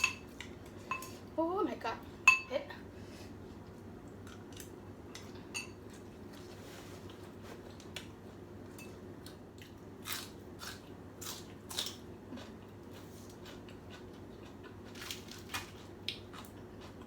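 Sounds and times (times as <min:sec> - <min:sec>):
person chewing noodles: 0:09.2 - 0:17.0.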